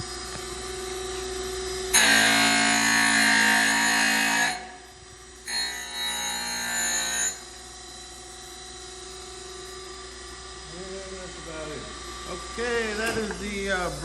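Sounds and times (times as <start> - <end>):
machine running hum: 0.0 - 14.0
grinding wheel grinding metal: 1.9 - 9.4.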